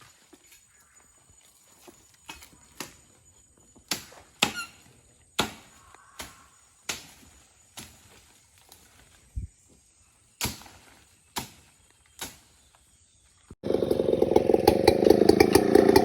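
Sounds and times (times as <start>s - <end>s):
short falling squeak: 4.4s - 4.8s.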